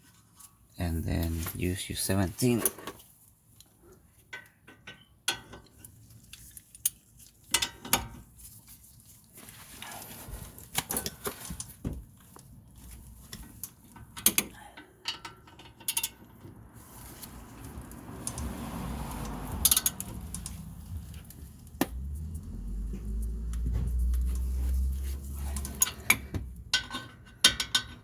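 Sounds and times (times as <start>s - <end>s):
ratchet wrench clicking: 19.6s - 20.5s.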